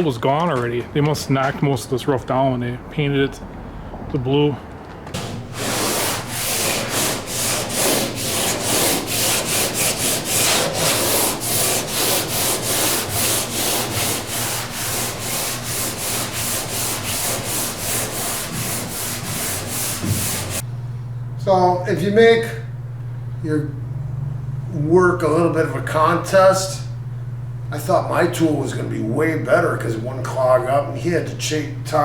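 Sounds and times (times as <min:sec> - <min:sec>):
power sander grinding metal: 0:05.2 - 0:20.6.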